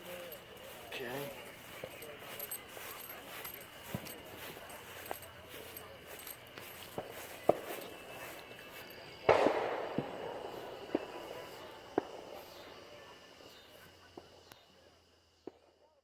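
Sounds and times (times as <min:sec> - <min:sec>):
fireworks bang with rumble: 0:09.2 - 0:12.7
firework pops: 0:09.2 - 0:12.8.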